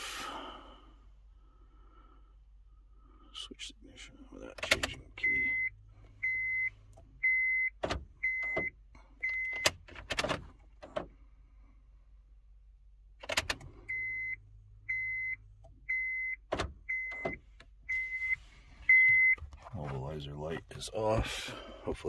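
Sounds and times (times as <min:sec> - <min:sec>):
key turning in ignition switch: 0:04.6 - 0:05.4, 0:06.9 - 0:11.1, 0:13.2 - 0:14.1.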